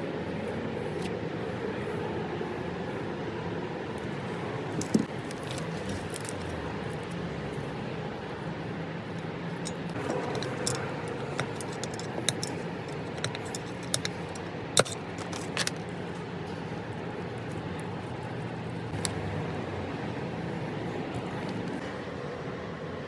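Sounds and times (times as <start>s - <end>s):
steady low hum: 0.0s - 23.0s
small metal parts clinking: 4.7s - 7.8s, 9.1s - 16.2s.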